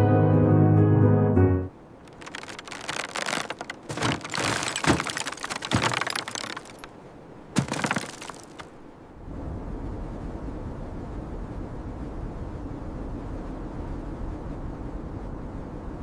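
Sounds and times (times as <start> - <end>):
dense crackling and snapping: 2.1 - 6.9, 7.6 - 8.7.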